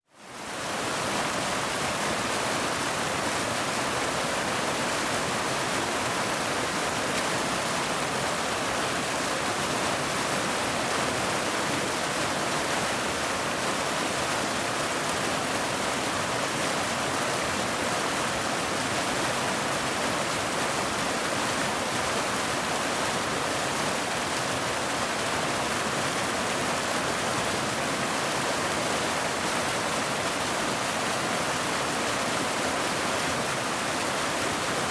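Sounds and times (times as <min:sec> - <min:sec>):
waterfall rushing: 0:00.4 - 0:34.9.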